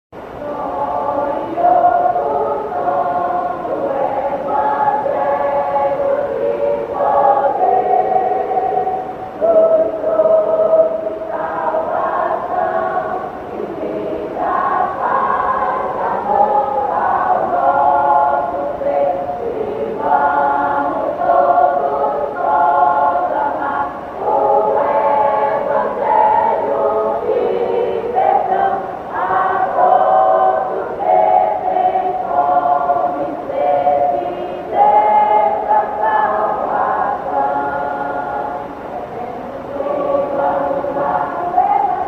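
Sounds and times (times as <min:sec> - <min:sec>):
choir singing a hymn: 0:00.2 - 0:42.0.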